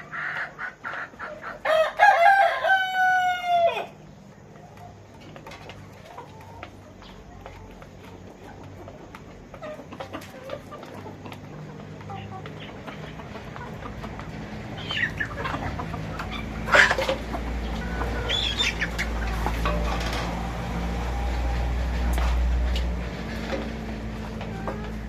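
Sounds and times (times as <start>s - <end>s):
chickens clucking: 0.0s - 25.0s.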